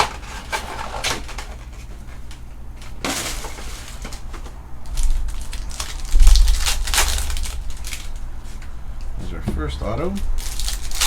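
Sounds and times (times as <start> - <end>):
wrapper crinkling: 3.4 - 8.6, 10.4 - 11.0
dull low thumps: 6.1 - 10.6.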